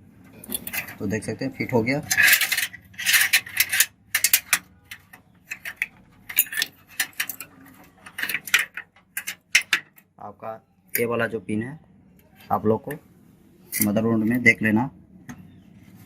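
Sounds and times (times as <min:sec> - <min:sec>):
plastic connectors clicking and rattling: 0:02.1 - 0:10.1.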